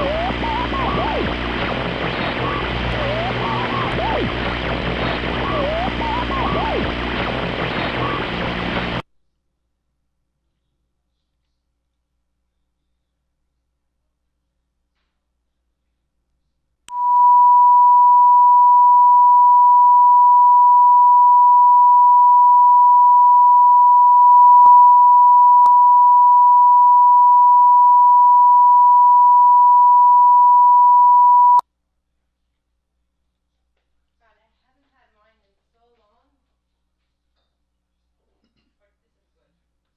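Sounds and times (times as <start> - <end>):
loud steady electronic tone: 0.0 - 9.0, 16.9 - 31.6.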